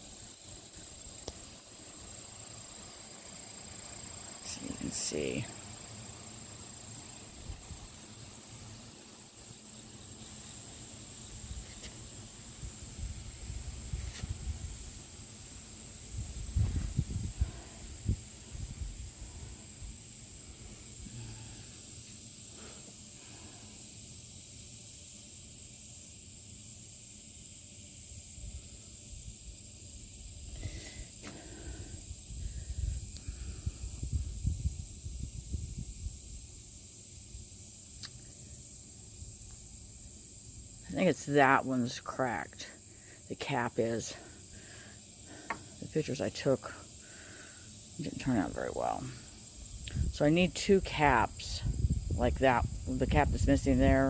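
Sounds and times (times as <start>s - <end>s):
high-pitched hiss: 0.0s - 54.0s.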